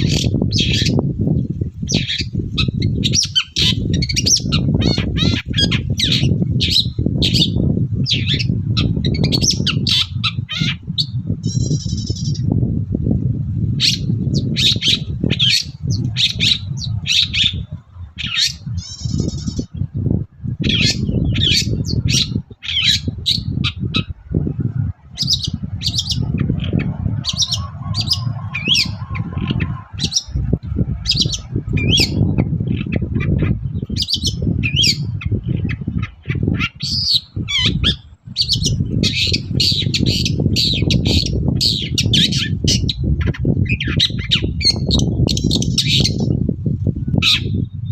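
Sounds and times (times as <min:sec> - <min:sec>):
bird chattering song: 0:00.0 - 0:12.6, 0:13.8 - 0:46.4
low rumble: 0:10.8 - 0:36.6.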